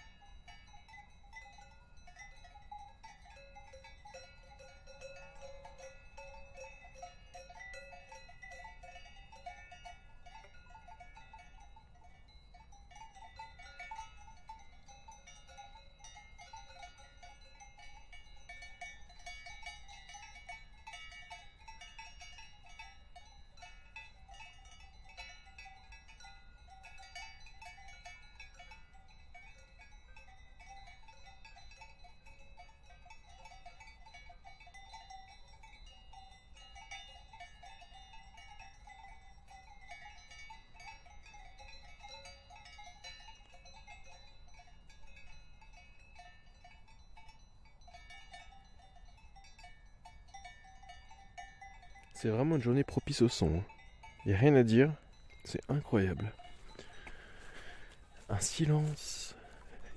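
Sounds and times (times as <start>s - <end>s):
cowbells clanking: 0.0s - 59.9s.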